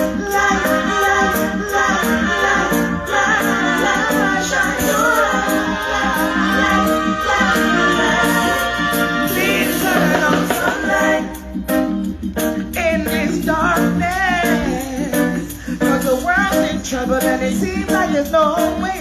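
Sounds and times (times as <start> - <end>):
reggae band playing: 0.0 - 19.0.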